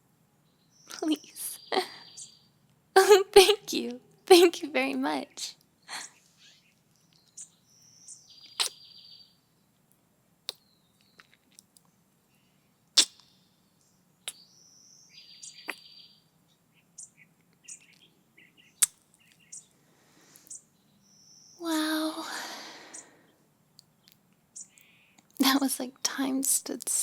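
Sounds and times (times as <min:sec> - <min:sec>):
birdsong: 0:00.0 - 0:09.9, 0:10.5 - 0:27.0
bird whistle and buzzy trill: 0:07.4 - 0:09.4, 0:14.3 - 0:16.2
kissing lip smacks: 0:08.6 - 0:08.8, 0:13.0 - 0:13.2, 0:18.8 - 0:19.0.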